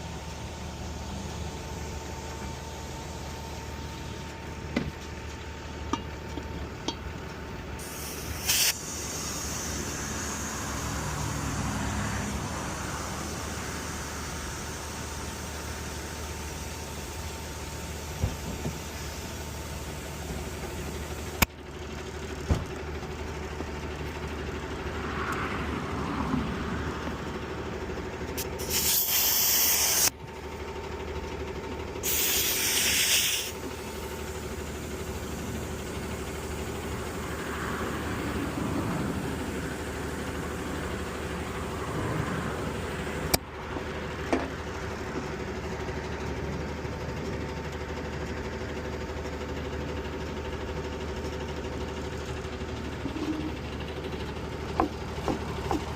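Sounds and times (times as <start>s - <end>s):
engine running: 0.0s - 55.9s
compressed air hissing: 7.8s - 21.5s, 28.4s - 30.1s, 32.0s - 38.6s.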